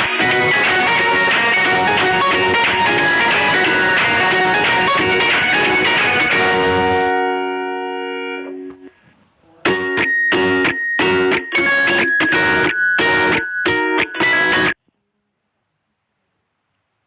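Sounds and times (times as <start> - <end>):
held music chord: 0.0 - 8.7
strummed guitar chords: 0.0 - 8.9, 9.7 - 14.8.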